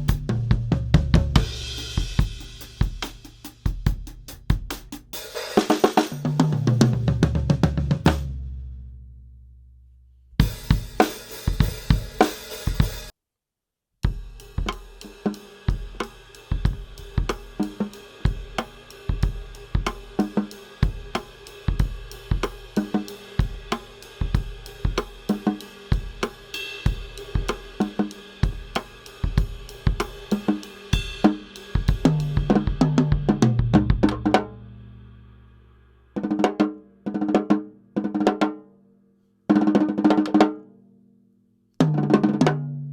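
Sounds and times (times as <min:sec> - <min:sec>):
drum kit groove: 0:00.0 - 0:08.9, 0:10.4 - 0:13.1, 0:14.0 - 0:35.1
tom drum fill: 0:00.0 - 0:08.9, 0:28.4 - 0:35.1.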